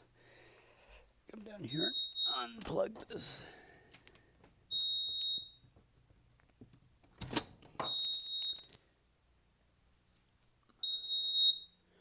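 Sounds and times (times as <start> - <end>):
high-pitched alarm panel beeps: 1.7 - 2.6, 4.7 - 5.6, 10.8 - 11.8.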